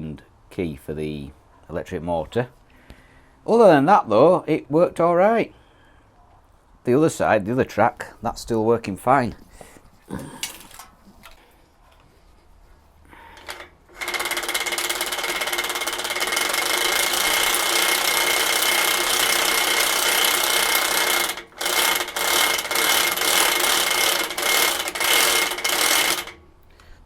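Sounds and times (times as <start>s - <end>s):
toy bulldozer motor whining: 13.1s - 26.4s.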